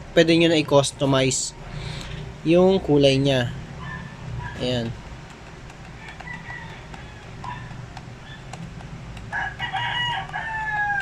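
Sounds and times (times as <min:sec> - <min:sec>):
rooster crowing: 0:05.9 - 0:08.4, 0:09.3 - 0:11.0.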